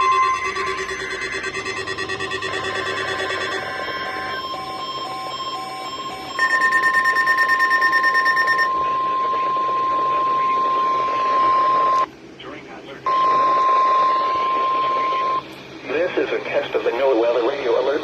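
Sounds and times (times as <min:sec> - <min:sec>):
higher pulsing tone: 0:00.0 - 0:04.8
steady alarm tone: 0:00.0 - 0:12.1, 0:13.1 - 0:15.5.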